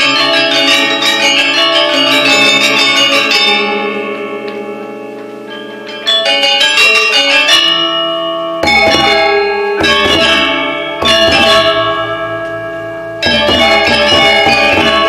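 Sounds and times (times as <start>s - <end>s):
gamelan metallophones playing: 0.0s - 15.0s
low gong tone: 8.6s - 15.0s.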